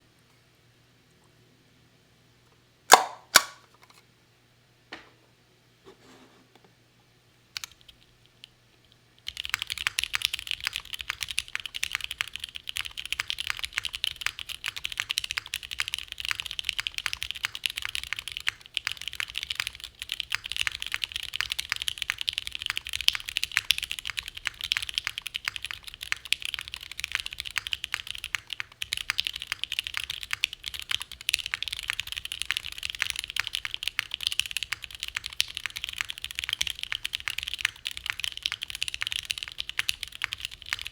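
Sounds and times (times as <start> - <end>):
single keystrokes: 2.9 - 3.6
fast mechanical keyboard typing: 9.2 - 40.9.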